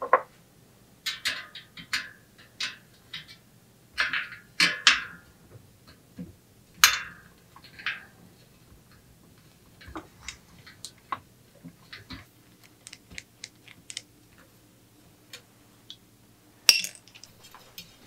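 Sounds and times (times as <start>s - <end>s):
metal tools clinking: 16.7s - 17.9s.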